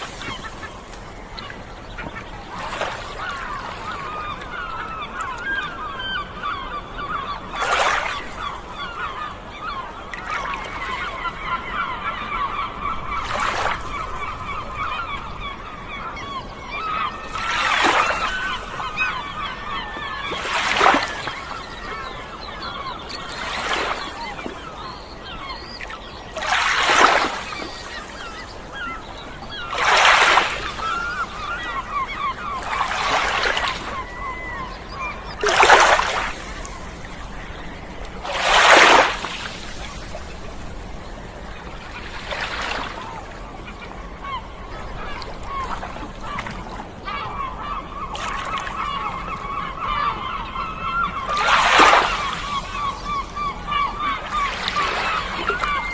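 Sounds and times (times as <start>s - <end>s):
waves washing in: 0.0s - 5.0s, 16.8s - 46.9s, 51.0s - 55.9s
seagulls calling: 0.0s - 55.9s.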